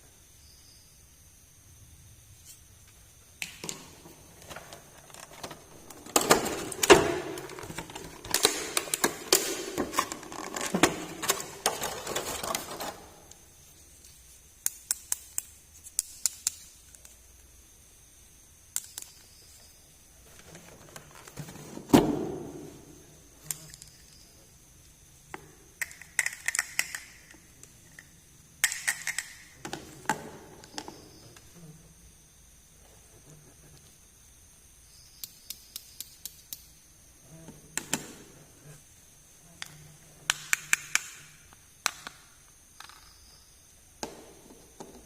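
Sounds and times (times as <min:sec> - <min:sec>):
plastic toys clicking and rustling: 0:04.4 - 0:13.1, 0:25.8 - 0:27.4.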